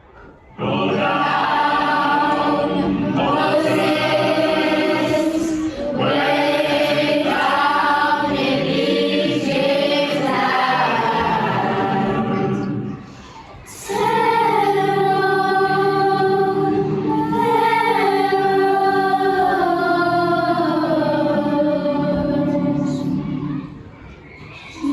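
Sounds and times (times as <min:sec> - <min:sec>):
choir singing slow melody: 0:00.0 - 0:24.9.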